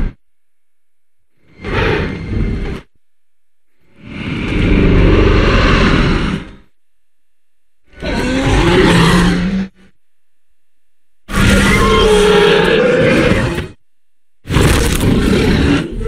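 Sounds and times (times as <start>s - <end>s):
dinosaur growls: 4.0s - 6.6s, 7.9s - 9.8s, 14.5s - 16.0s.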